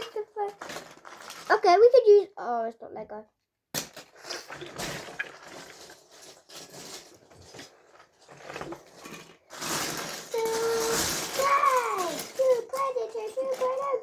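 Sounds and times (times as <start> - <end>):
plastic bricks clattering: 0.0 - 1.7, 3.8 - 14.0.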